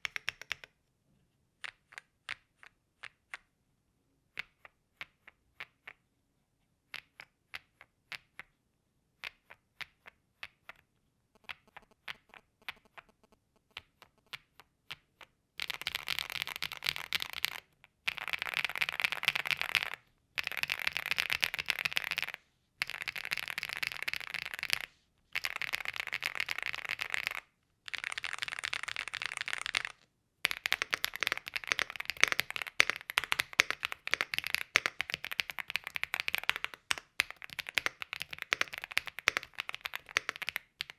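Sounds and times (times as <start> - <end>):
mechanical keyboard typing: 25.4 - 40.9.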